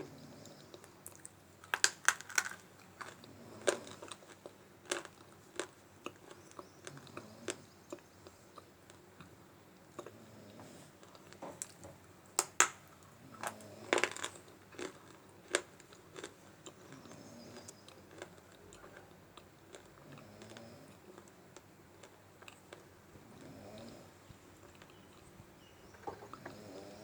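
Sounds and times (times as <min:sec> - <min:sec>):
clay crunched between teeth: 0:01.7 - 0:03.9, 0:12.4 - 0:12.8.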